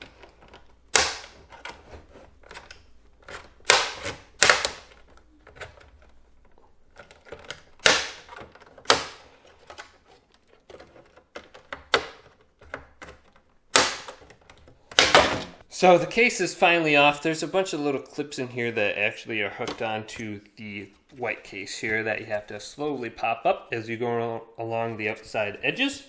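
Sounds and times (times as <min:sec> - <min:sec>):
plastic clips snapping: 0:06.9 - 0:10.0, 0:10.6 - 0:15.3.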